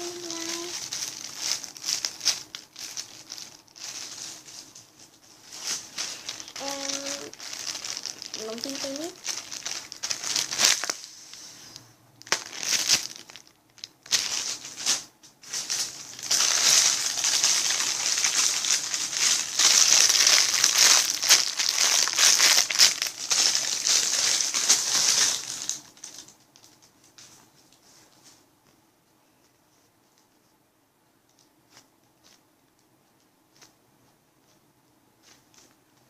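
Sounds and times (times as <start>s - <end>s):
plastic bag crinkling: 0.0s - 11.4s, 12.2s - 28.3s.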